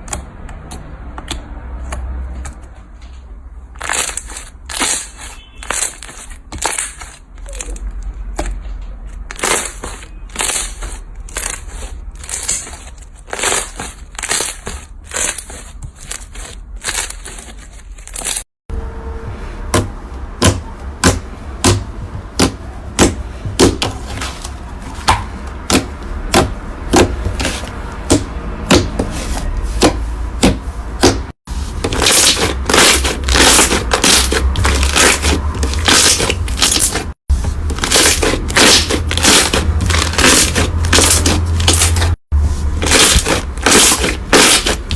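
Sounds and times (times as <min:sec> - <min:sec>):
slime crackling and popping: 0:37.8 - 0:42.1, 0:42.8 - 0:44.9.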